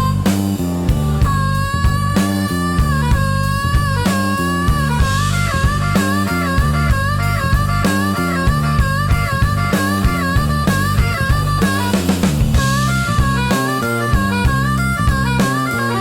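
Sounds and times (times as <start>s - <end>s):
bass line: 0.0s - 16.0s
drum beat: 0.0s - 16.0s
guitar: 0.0s - 16.0s
harmonica: 0.0s - 16.0s.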